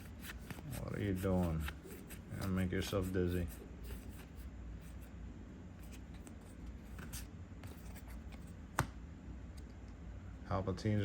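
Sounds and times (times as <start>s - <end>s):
cards rustling: 0.0s - 5.1s, 5.8s - 8.9s.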